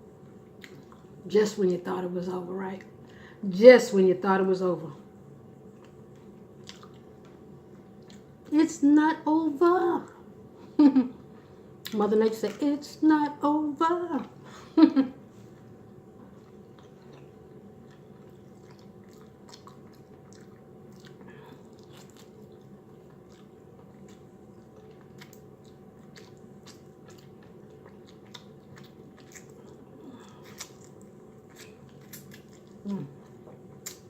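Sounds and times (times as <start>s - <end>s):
person chewing: 0.5s - 1.1s, 5.6s - 8.4s, 15.5s - 34.0s.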